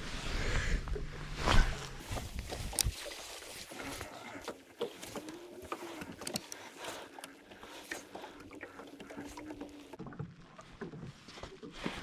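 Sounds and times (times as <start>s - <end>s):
light clicks and taps: 4.4s - 8.1s.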